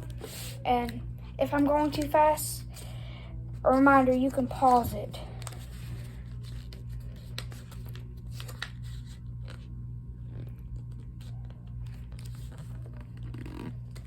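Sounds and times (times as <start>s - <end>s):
steady low hum: 0.0s - 14.0s
paper being folded and creased: 4.5s - 9.7s, 10.3s - 14.0s.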